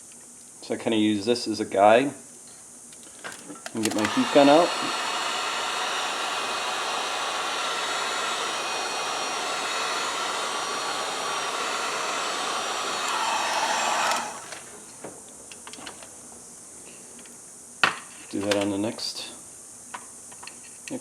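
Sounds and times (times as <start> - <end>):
heat gun blowing: 3.7 - 14.7.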